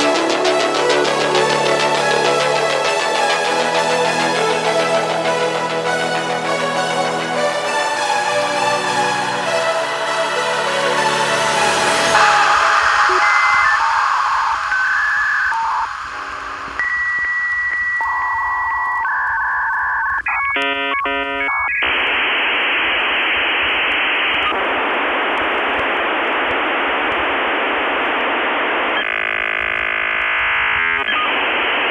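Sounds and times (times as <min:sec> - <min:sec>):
static hiss: 0:10.5 - 0:31.9
warble of changing tones: 0:11.6 - 0:16.8
lower telephone tone: 0:12.1 - 0:22.2
buzzing tone: 0:12.1 - 0:22.8, 0:28.7 - 0:31.8
high telephone beep: 0:12.2 - 0:21.9.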